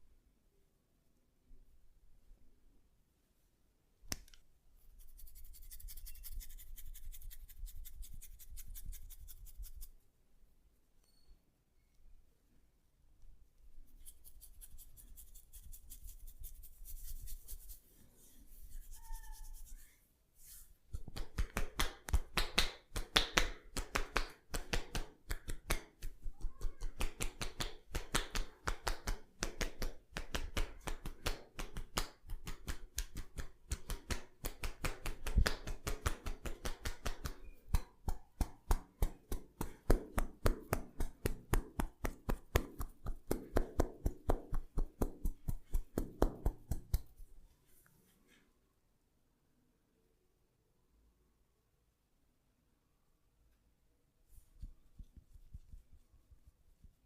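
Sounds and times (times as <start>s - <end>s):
rapid hand taps on head: 21.0s - 47.2s.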